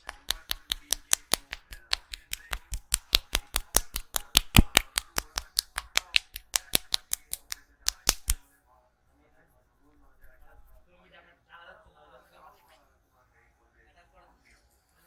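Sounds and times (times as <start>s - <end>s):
hand slaps massage: 0.0s - 8.4s.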